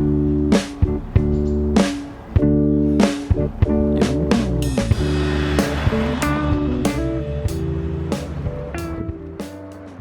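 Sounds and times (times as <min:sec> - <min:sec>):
song with guitar and beat: 0:00.0 - 0:10.0.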